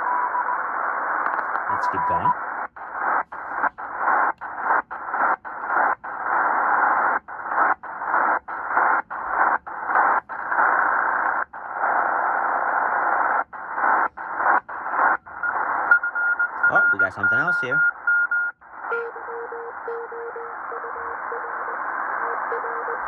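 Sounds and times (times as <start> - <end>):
shortwave radio static: 0.6 - 18.0, 18.7 - 23.0
radio muting chuff: 1.6 - 15.9, 16.7 - 17.8.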